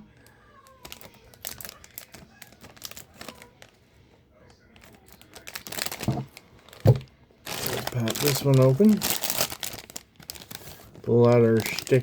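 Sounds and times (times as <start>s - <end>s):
plastic packaging clicks and crinkles: 0.0s - 3.8s, 4.4s - 12.0s
packaging rustling: 0.6s - 3.8s, 4.6s - 12.0s.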